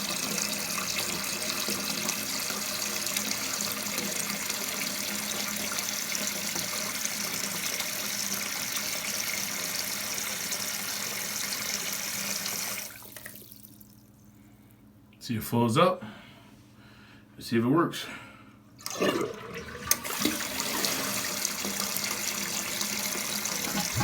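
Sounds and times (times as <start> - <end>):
water hissing into toilet tank: 0.0 - 13.9, 18.8 - 24.0.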